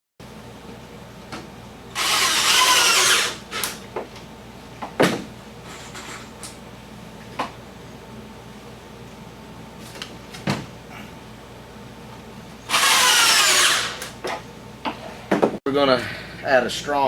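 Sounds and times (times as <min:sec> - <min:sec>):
power drill driving screw: 0:02.0 - 0:03.8, 0:12.7 - 0:14.2.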